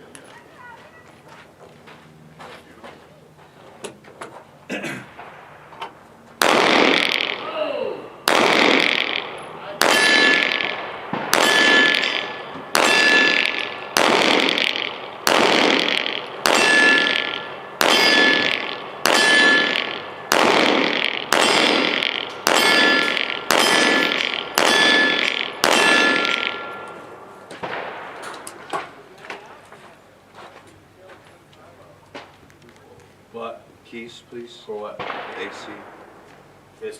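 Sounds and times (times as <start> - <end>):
steel target ringing when struck: 9.8 - 13.8, 16.4 - 20.1, 21.3 - 27.0.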